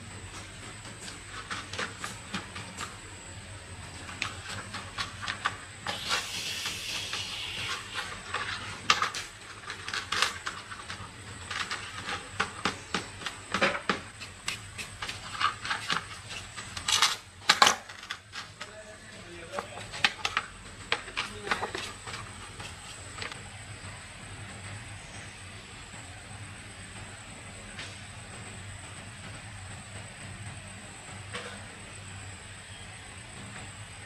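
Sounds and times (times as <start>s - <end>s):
hiss: 5.8s - 9.0s.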